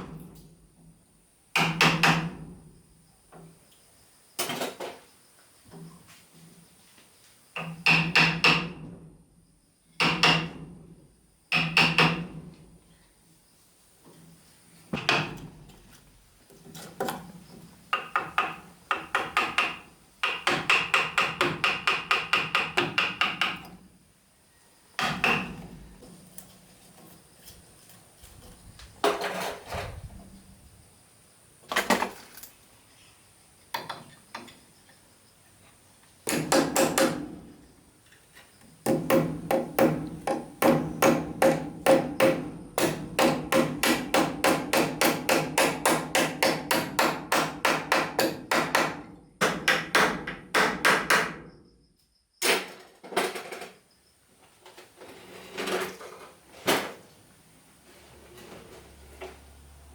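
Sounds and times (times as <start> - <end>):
hammer striking wood: 1.6 - 2.5, 7.6 - 8.8, 10.0 - 10.6, 11.5 - 12.4, 15.0 - 15.5, 17.9 - 23.7, 25.0 - 25.6, 36.2 - 37.3, 38.8 - 51.4.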